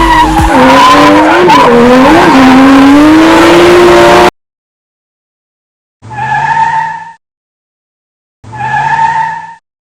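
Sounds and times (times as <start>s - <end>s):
tyre screech: 0.0s - 2.7s
loud engine and tyre sound: 0.0s - 4.4s, 6.0s - 7.2s, 8.4s - 9.6s.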